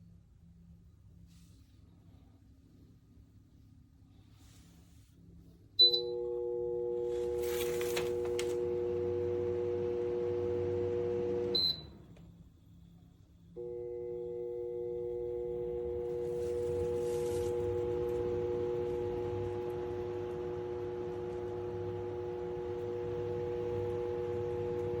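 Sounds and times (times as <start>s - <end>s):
fan beeping: 5.8s - 12.1s, 13.6s - 25.0s
window fan motors humming: 6.4s - 12.2s, 13.6s - 25.0s.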